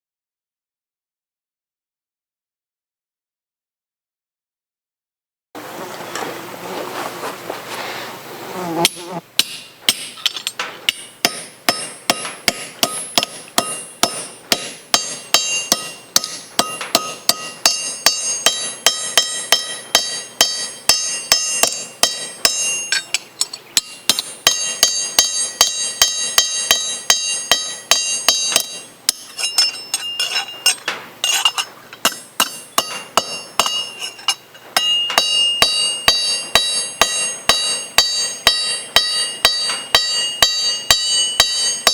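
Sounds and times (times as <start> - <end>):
hammer striking metal: 8.9 - 41.9.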